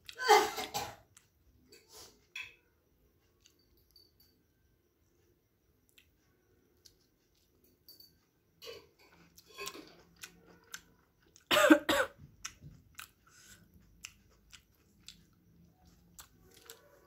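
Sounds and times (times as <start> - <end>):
person coughing: 0.2 - 1.0, 11.5 - 12.2
quiet chewing and mouth clicks: 1.0 - 2.4, 3.0 - 4.4, 5.2 - 11.5, 12.2 - 17.0.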